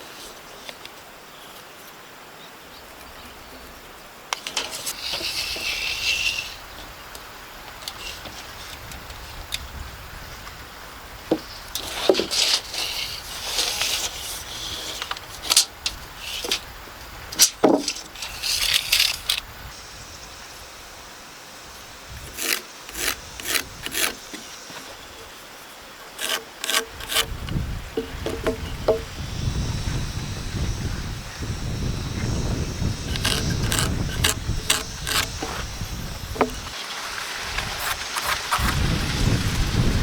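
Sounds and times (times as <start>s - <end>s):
scraping and rubbing: 4.4s - 6.6s, 11.8s - 16.6s, 17.4s - 19.4s, 22.2s - 24.9s, 26.2s - 27.4s, 33.0s - 39.5s.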